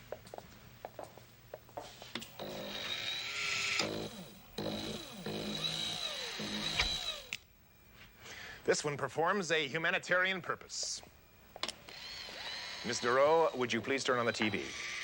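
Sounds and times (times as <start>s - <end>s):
robot servo motors whirring: 2.3s - 7.4s, 11.9s - 15.0s.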